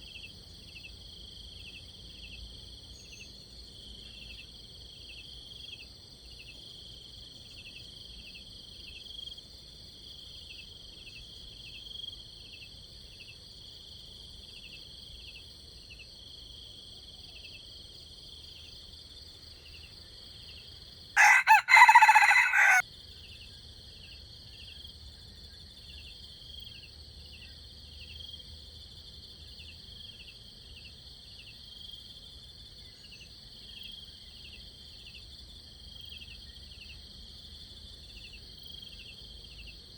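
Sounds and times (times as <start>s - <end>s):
crickets chirring: 14.5s - 30.8s
rooster crowing: 21.2s - 22.8s.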